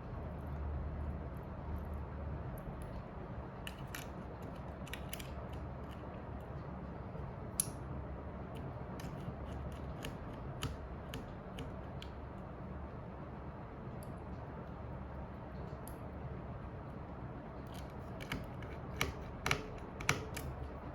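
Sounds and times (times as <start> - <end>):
tools and parts clicking: 3.6 - 6.1, 17.7 - 20.7.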